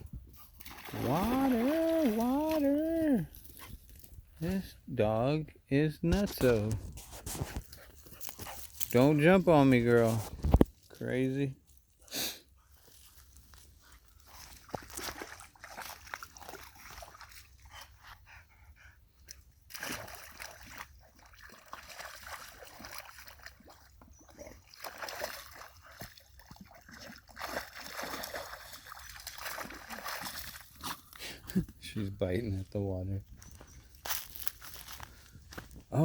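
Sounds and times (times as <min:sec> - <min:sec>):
dog splashing in water: 0:00.4 - 0:03.0, 0:14.2 - 0:17.8, 0:19.7 - 0:31.0.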